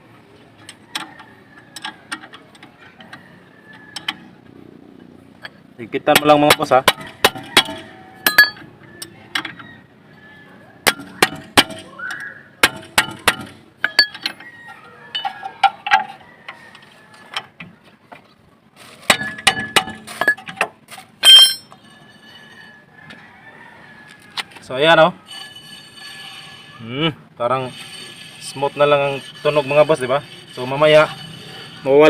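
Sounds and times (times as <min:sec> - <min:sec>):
metal tools clinking: 0:07.7 - 0:09.6, 0:13.8 - 0:16.2, 0:19.1 - 0:20.6, 0:21.2 - 0:22.7.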